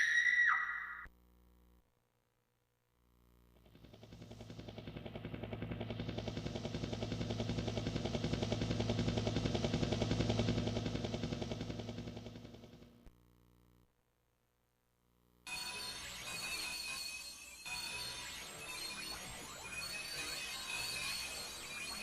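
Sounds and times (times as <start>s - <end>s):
low hum: 3.0s - 13.9s
pulsing mechanical effect: 3.7s - 12.9s, 15.5s - 22.0s.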